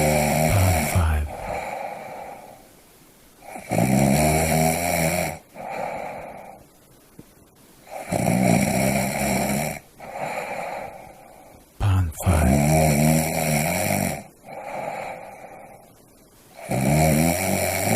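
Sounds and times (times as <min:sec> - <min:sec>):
loud low buzzing snore: 0:00.0 - 0:00.8, 0:03.5 - 0:05.4, 0:07.9 - 0:09.8, 0:12.4 - 0:14.3, 0:16.6 - 0:17.9
soft breath: 0:01.0 - 0:02.8, 0:05.5 - 0:06.8, 0:10.0 - 0:12.0, 0:14.4 - 0:16.1.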